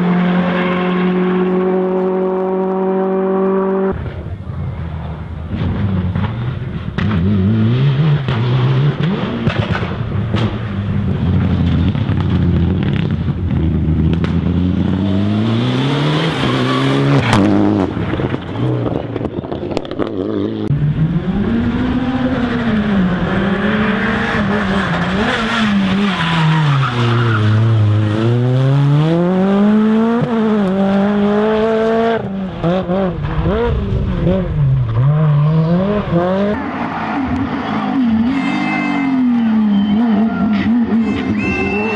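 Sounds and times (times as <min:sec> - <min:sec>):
rally car engines revving: 0:00.0 - 0:41.9.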